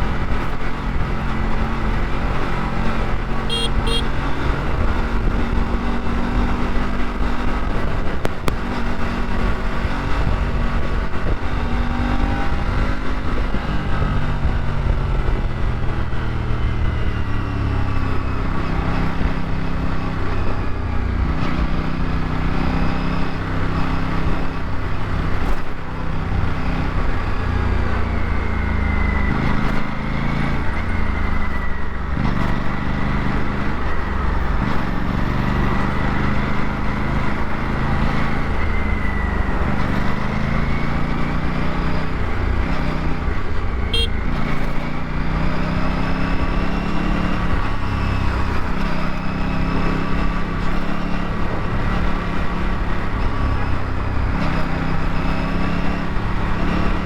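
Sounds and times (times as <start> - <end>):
motorcycle engine running: 0.0 - 17.3, 42.0 - 45.0
road and wind rumble: 0.0 - 57.0.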